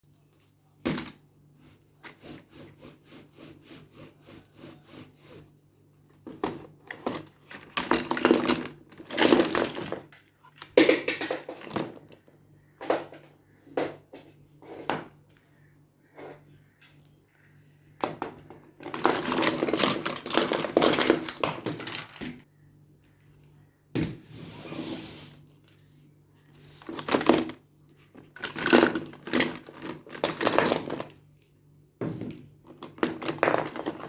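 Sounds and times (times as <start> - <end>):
packaging rubbing and scraping: 24.3 - 31.2.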